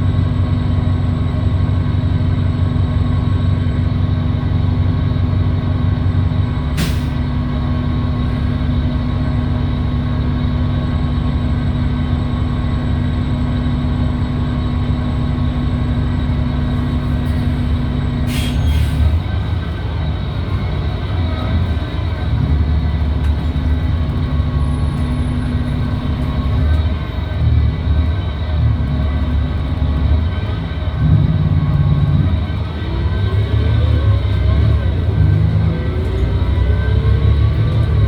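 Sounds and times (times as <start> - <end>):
bus engine drone: 0.0 - 38.0.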